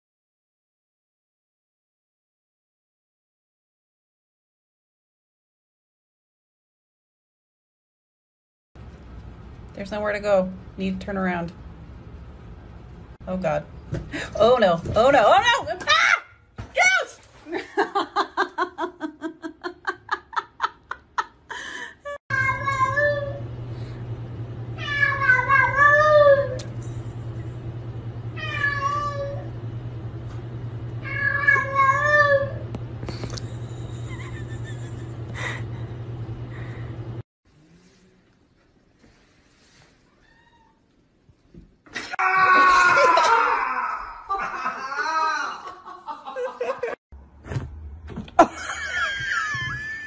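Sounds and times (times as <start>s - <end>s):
steady low hum: 20.3s - 31.8s, 32.4s - 39.5s
cat yowling: 24.8s - 26.6s, 28.4s - 29.5s, 31.0s - 32.6s, 40.1s - 40.8s.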